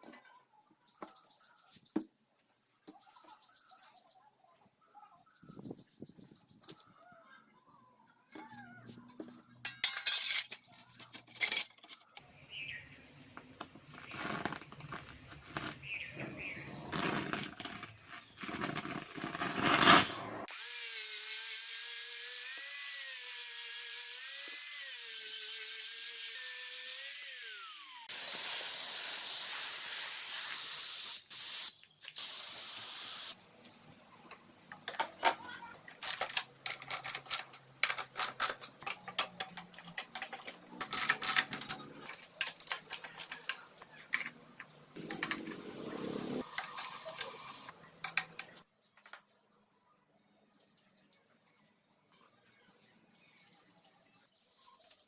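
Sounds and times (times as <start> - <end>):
small power tool whirring: 20.4 - 33.4
loud steady hiss: 28.1 - 33.4.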